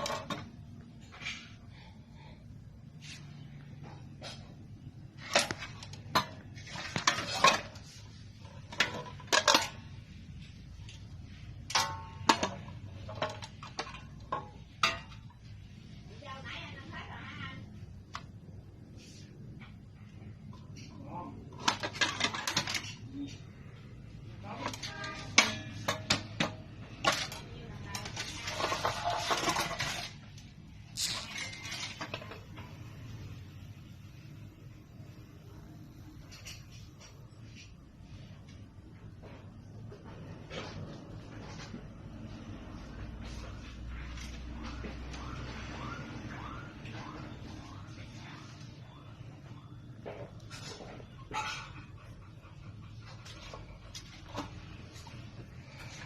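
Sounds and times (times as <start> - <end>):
metal parts rattling: 27.0 - 32.6.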